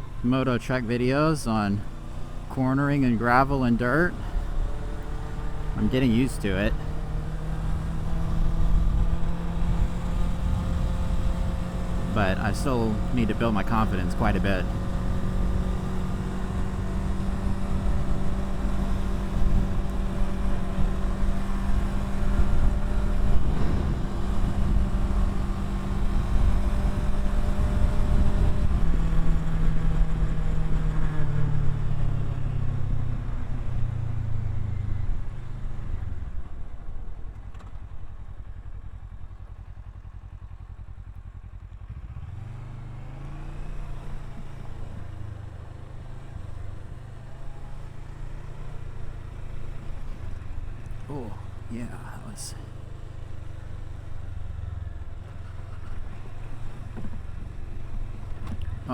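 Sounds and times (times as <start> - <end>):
wind: 0.0 - 58.9
motorcycle engine running: 1.8 - 32.1, 35.2 - 51.7.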